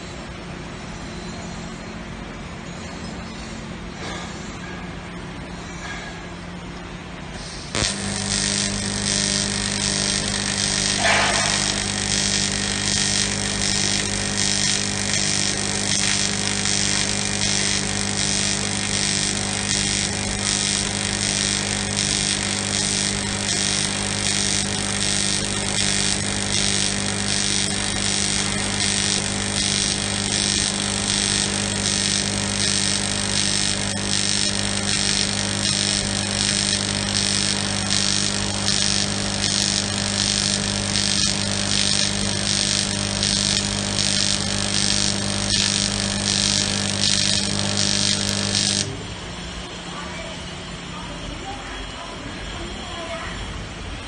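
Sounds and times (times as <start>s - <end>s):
welding arc buzzing hum: 3.6s - 4.7s, 7.0s - 54.0s
pulsing hiss: 7.4s - 49.0s.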